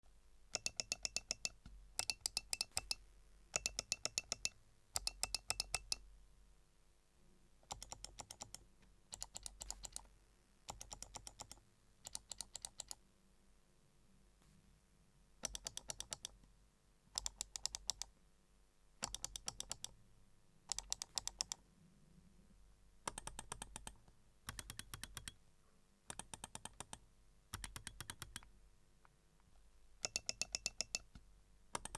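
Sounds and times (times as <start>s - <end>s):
mouse button clicks: 0.6s - 3.0s.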